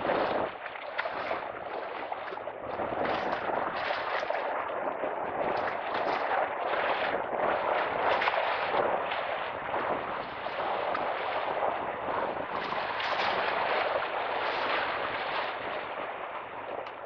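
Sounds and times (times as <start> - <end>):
lake water splashing on shore: 0.0 - 17.0
wind: 0.0 - 17.0.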